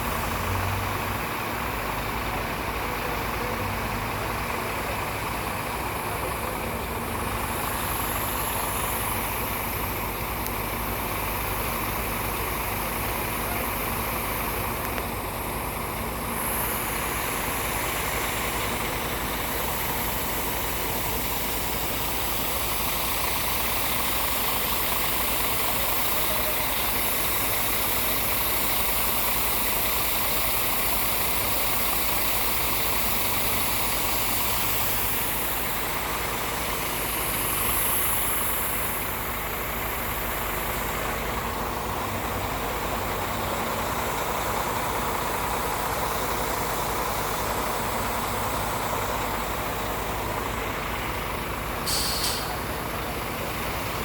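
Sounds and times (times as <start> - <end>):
heavy diesel engine running: 0.0 - 54.0
short hiss: 51.8 - 53.0.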